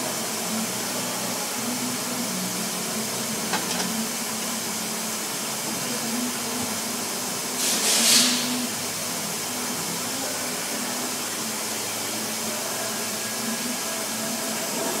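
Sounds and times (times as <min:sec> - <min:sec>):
short hiss: 0:07.6 - 0:08.7.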